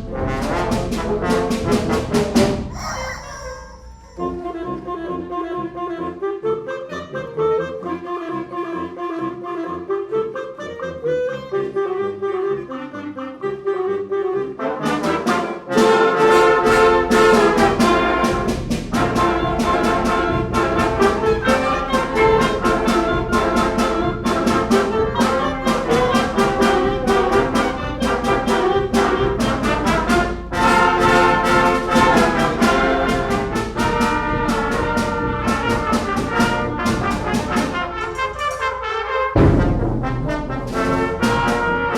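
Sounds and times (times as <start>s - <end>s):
concert band playing: 0.1s - 4.6s, 15.0s - 41.9s
sharp percussion hits: 2.6s - 4.6s.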